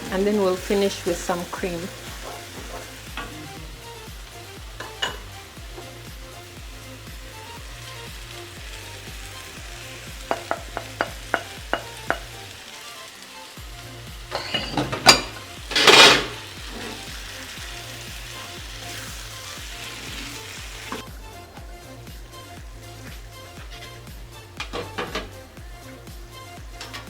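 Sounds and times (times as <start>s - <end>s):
sauce sizzling in a pot: 0.0s - 27.0s
spoon tapping pot rim: 10.3s - 12.3s.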